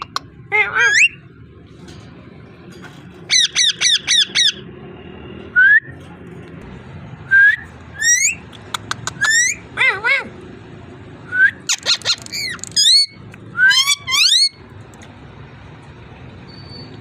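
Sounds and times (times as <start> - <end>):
parrot squawking: 0.0 - 1.2, 3.3 - 4.6, 8.0 - 10.4, 11.7 - 14.6.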